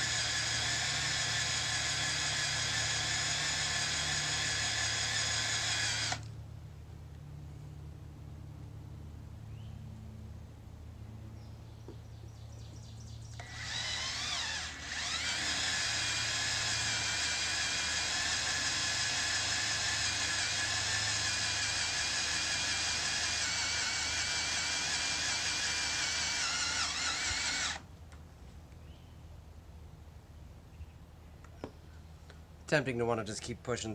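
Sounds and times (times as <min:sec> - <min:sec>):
cordless drill cutting steel: 0:00.0 - 0:06.3, 0:13.3 - 0:27.9.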